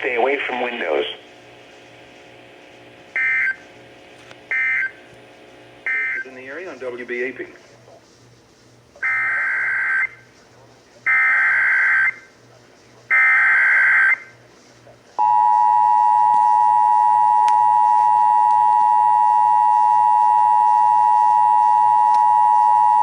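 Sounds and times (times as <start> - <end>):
two-tone alarm: 3.2 - 3.6, 4.5 - 5.0, 5.8 - 6.3, 9.0 - 10.2, 11.1 - 12.3, 13.1 - 14.3, 15.2 - 23.0.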